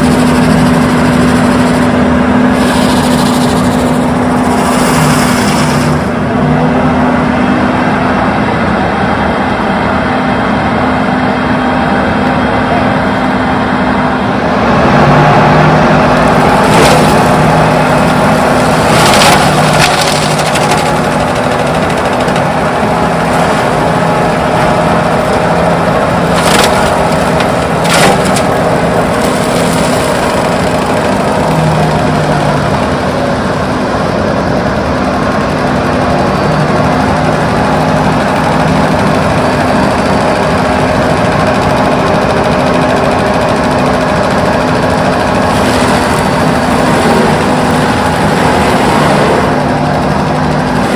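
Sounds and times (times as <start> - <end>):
mulcher shredding wood: 0.0 - 9.1, 11.4 - 50.9
excavator engine under load: 0.0 - 50.9
wood splintering cracks: 16.2 - 32.2.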